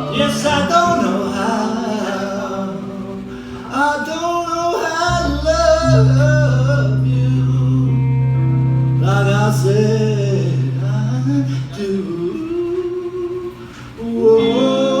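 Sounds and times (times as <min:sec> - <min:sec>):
guitar: 0:00.0 - 0:15.0
man singing: 0:00.0 - 0:15.0
steady low held note: 0:05.1 - 0:13.4.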